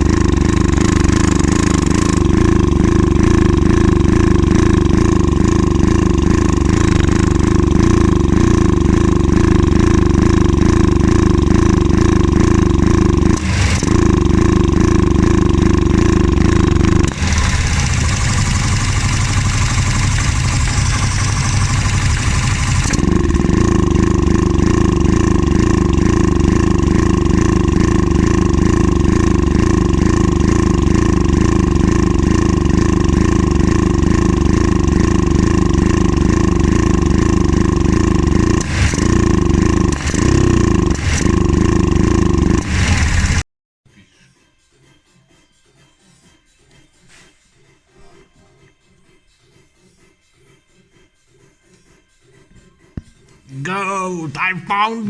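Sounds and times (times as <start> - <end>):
atv engine running: 0.0 - 43.5.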